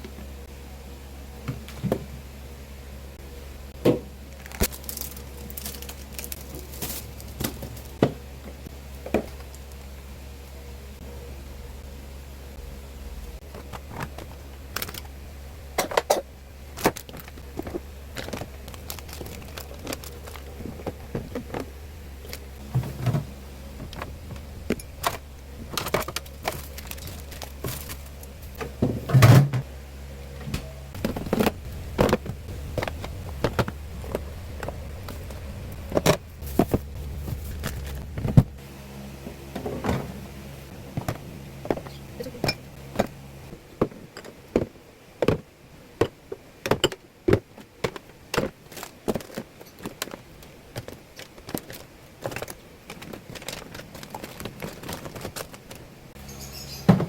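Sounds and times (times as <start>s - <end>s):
steady low hum: 0.0s - 57.0s
household objects clicking and knocking: 41.0s - 55.8s.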